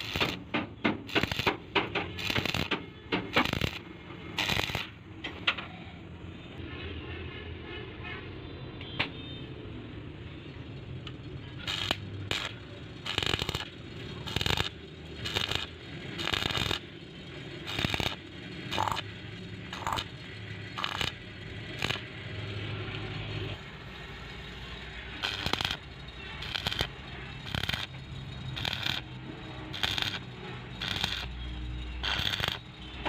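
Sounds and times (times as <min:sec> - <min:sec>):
harsh rasping on steel: 0:17.7 - 0:19.0, 0:19.7 - 0:22.1, 0:25.1 - 0:33.0.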